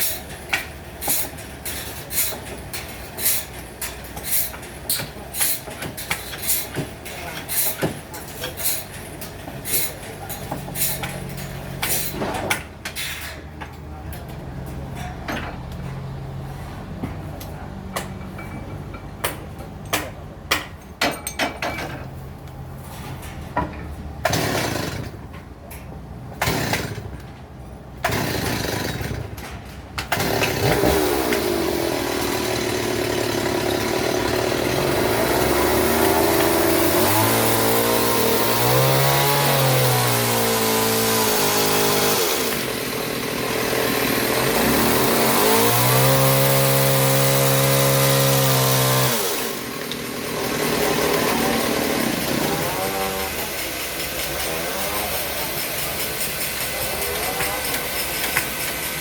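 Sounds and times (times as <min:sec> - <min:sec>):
saw cutting timber: 0:00.0 - 0:02.5, 0:03.2 - 0:09.0, 0:09.6 - 0:12.2, 0:30.1 - 0:59.0
knocks and clanks: 0:00.0 - 0:16.1
sawmill engine running: 0:30.1 - 0:59.0.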